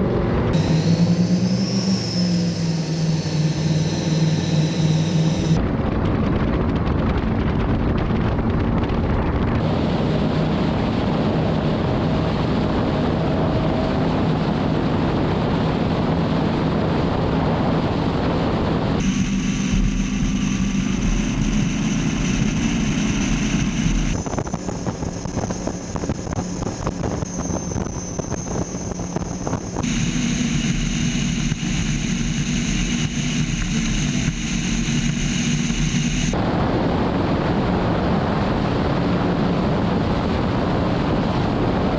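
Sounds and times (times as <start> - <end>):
powerboat engines droning: 0.0 - 5.6, 9.6 - 36.6.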